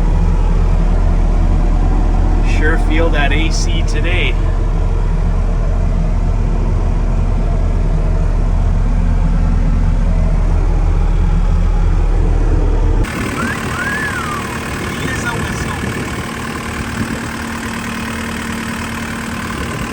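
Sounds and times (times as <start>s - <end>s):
diesel engine drone: 0.0s - 19.9s
engine idling: 0.0s - 19.9s
rising and falling whistle: 13.1s - 14.9s.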